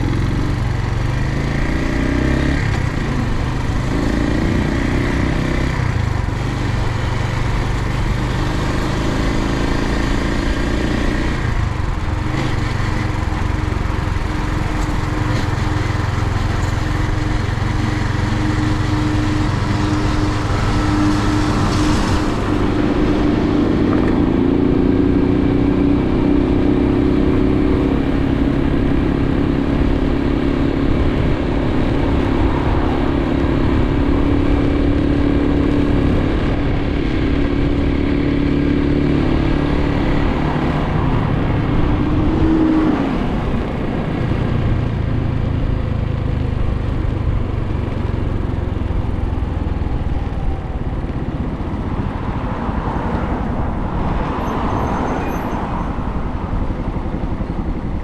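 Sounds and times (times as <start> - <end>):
motorcycle engine running: 0.0 - 54.2
steady rushing noise: 9.3 - 25.2.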